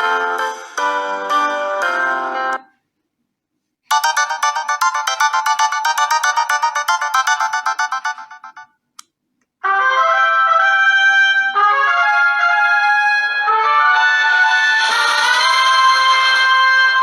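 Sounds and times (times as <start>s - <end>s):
ringtone of fast short notes: 3.9s - 8.7s
ringtone melody of held notes: 3.9s - 8.8s.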